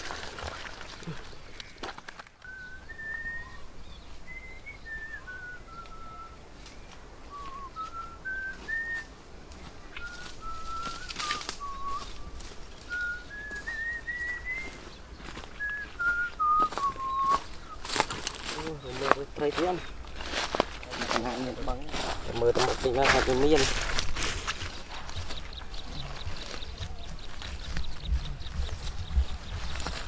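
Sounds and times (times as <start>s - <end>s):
person whistling slow tune: 2.4s - 3.7s, 4.3s - 6.4s, 7.3s - 9.1s, 10.0s - 14.8s, 15.5s - 18.0s.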